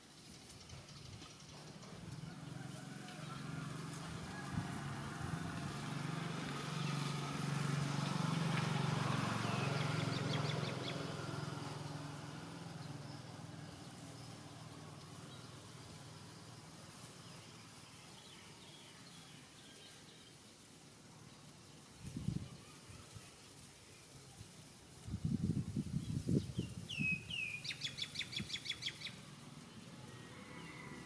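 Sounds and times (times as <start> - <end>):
passing vehicle engine hum: 1.3 - 19.6, 25.1 - 31.0.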